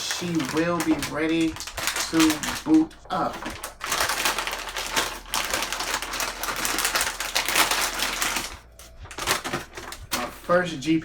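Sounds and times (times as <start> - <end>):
packaging crackling rustle: 0.0 - 10.7.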